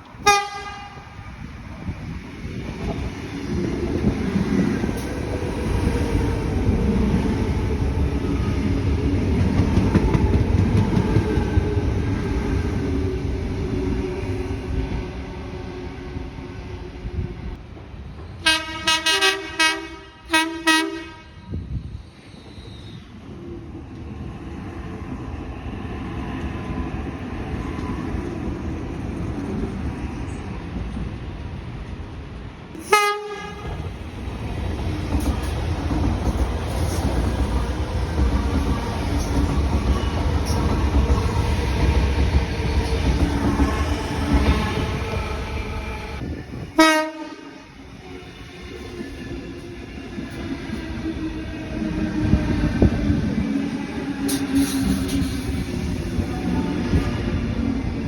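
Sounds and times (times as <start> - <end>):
train rumbling on rails: 0.0 - 58.0
train horn toot: 0.2 - 1.4, 18.4 - 21.7, 32.8 - 33.8, 46.8 - 48.4.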